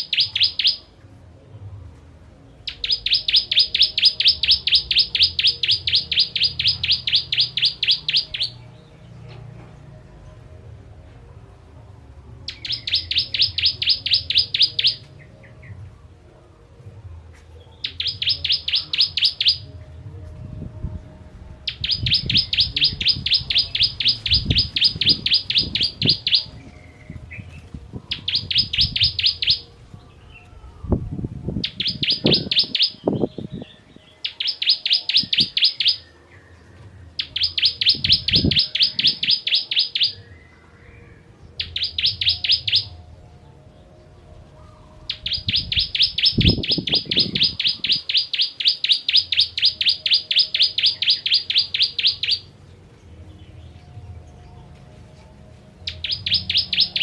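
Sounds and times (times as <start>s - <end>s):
bird singing sharp high notes: 0.0s - 0.9s, 2.7s - 8.6s, 12.5s - 15.6s, 17.8s - 19.8s, 21.7s - 30.4s, 31.6s - 36.3s, 37.1s - 40.5s, 41.6s - 43.0s, 44.8s - 52.6s, 55.8s - 57.0s.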